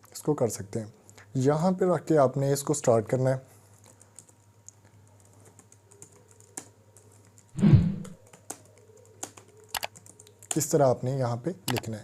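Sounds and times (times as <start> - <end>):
typing on computer keyboard: 3.8 - 7.6, 8.2 - 10.8, 11.7 - 12.0
loud dull thump: 7.6 - 8.1.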